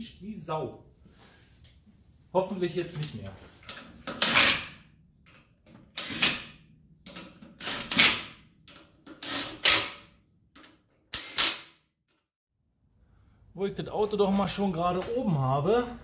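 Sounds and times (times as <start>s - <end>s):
tools rattling and knocking: 3.1s - 11.6s.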